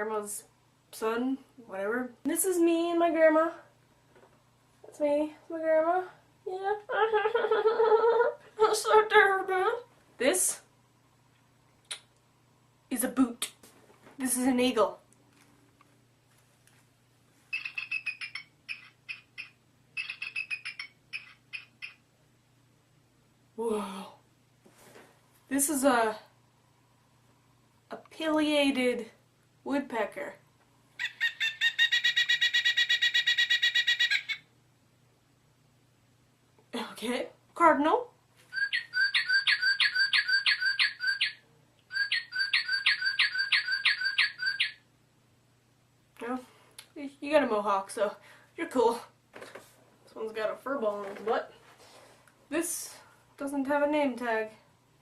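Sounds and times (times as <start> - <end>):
recorded bird song whistles: 17.5 - 22.0, 38.5 - 44.8
toy speaker playing eagle call: 17.5 - 22.0, 31.0 - 34.4, 38.5 - 44.8.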